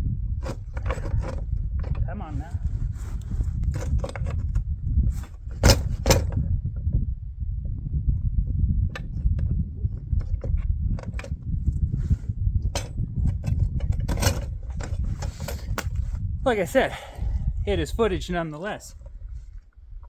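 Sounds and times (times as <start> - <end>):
steady low rumble: 0.0 - 20.0
metal hitch parts clinking: 12.8 - 16.0.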